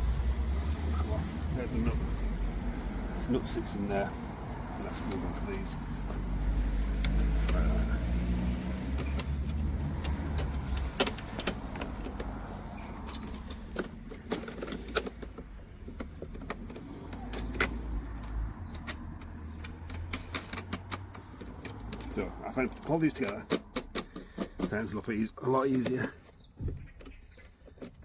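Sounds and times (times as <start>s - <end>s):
metallic clicks of bolts and fittings: 8.9s - 28.0s.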